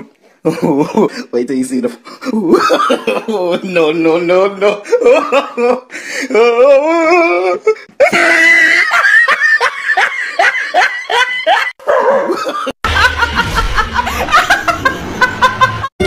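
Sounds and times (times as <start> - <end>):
person laughing hard: 4.8 - 16.0.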